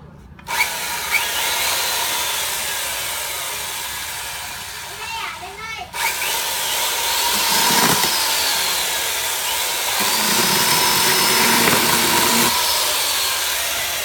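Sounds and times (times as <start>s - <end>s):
electric chainsaw running: 5.9s - 14.0s.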